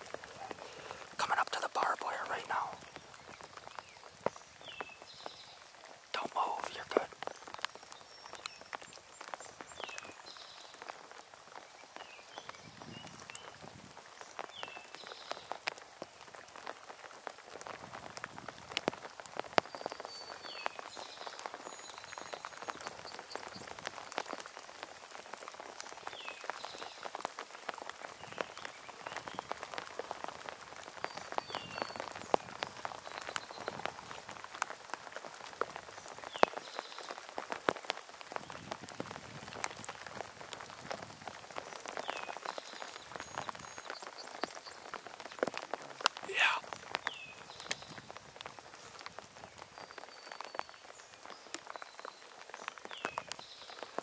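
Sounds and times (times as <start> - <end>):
raindrops ticking on surfaces: 0.0 - 54.0
steady rain: 0.0 - 54.0
faint bird call: 46.3 - 46.7.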